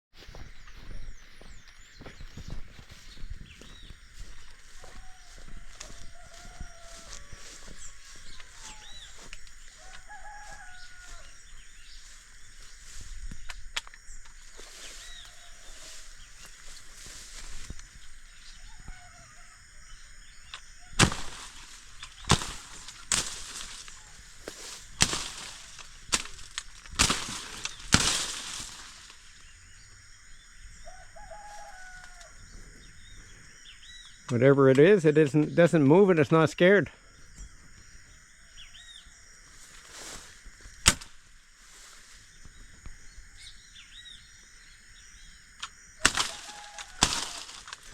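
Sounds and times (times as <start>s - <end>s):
crackling rustles of leaves: 0.1s - 34.4s, 37.6s - 47.9s
high bird chirps: 0.2s - 25.9s
rooster crowing: 3.6s - 12.2s, 14.5s - 26.6s, 30.2s - 34.0s, 46.0s - 47.9s.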